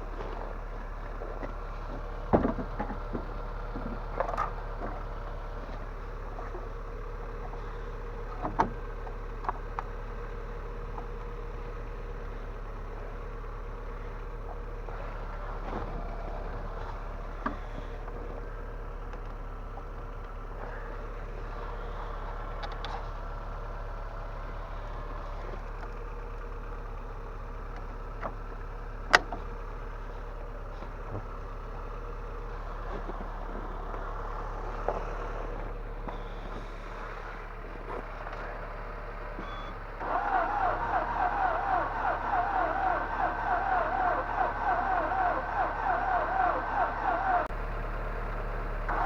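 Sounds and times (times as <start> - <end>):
engine starter cranking: 39.3 - 49.0.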